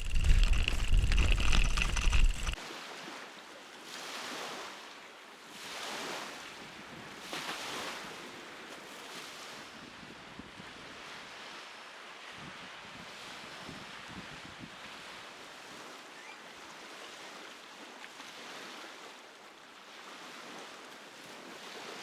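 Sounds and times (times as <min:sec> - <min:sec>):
low wind rumble on microphone: 0:00.0 - 0:02.6
small waves lapping: 0:00.0 - 0:09.7, 0:15.4 - 0:22.0.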